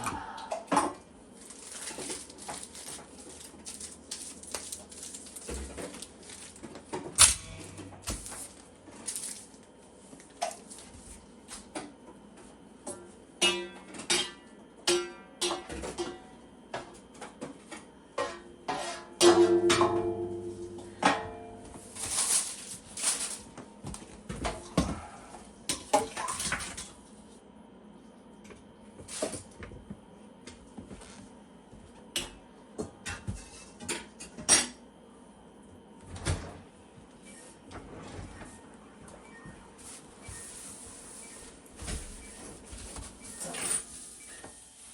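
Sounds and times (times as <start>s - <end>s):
metal pans and utensils clattering: 18.2s - 23.4s.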